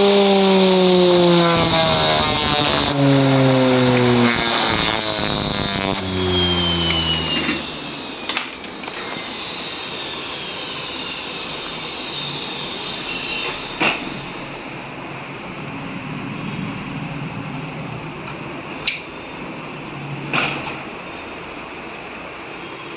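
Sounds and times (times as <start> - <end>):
washing machine drum spinning down: 0.0 - 13.8.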